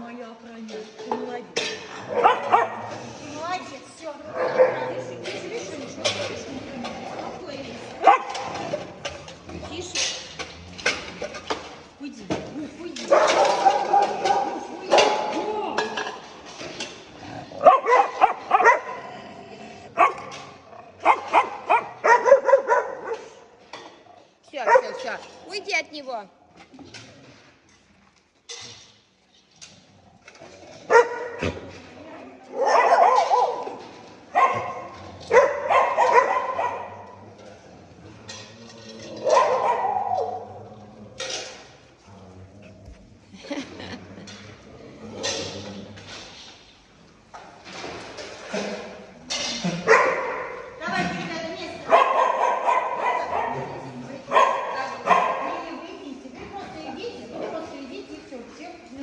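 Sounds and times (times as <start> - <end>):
dogs barking and yipping: 2.1 - 3.0, 8.0 - 8.7, 13.0 - 15.3, 17.6 - 19.0, 21.0 - 23.4, 32.6 - 37.2, 39.2 - 40.5, 49.8 - 50.7, 51.9 - 55.6.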